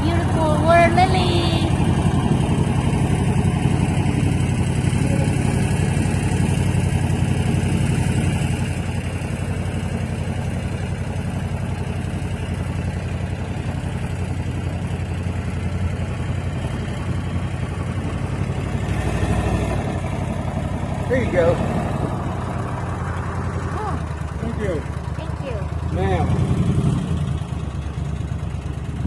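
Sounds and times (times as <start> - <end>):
boat motor running: 0.0 - 29.0.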